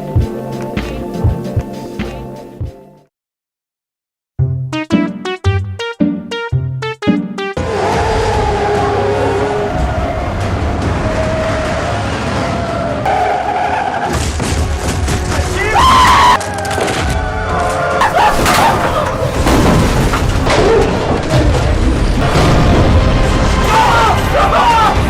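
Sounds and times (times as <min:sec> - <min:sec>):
music playing: 0:00.0 - 0:03.1, 0:04.4 - 0:10.9.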